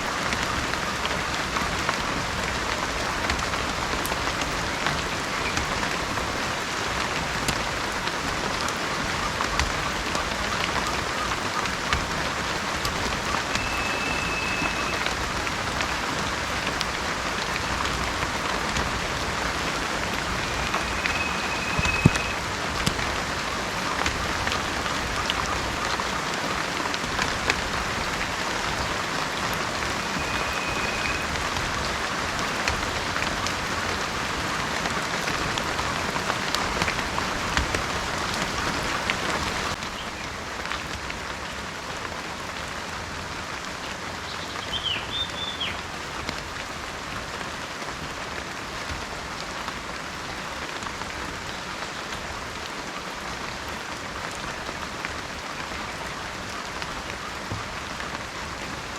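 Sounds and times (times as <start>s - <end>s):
raindrops clicking: 0.0s - 42.2s
heavy rain: 0.0s - 58.9s
bird whistling: 13.3s - 15.2s, 20.4s - 22.4s, 29.9s - 31.4s, 44.7s - 45.8s.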